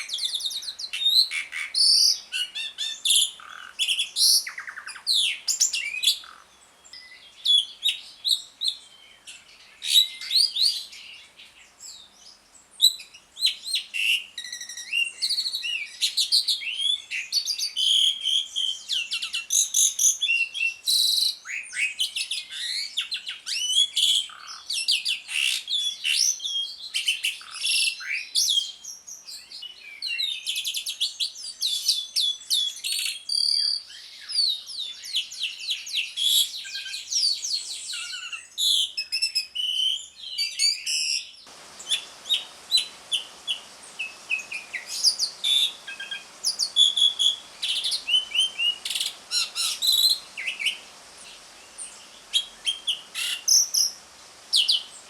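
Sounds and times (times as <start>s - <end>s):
starling singing chattering song: 41.5s - 55.0s.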